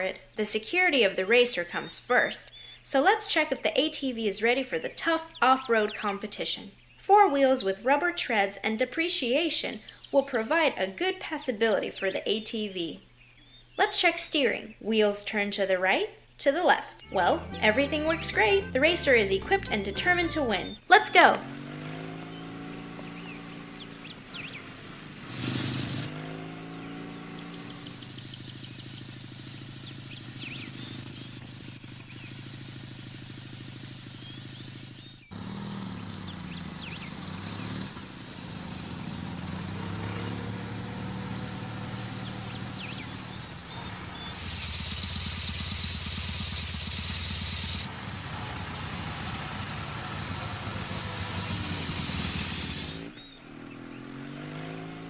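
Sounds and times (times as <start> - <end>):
quad bike engine revving: 17.0 - 55.0.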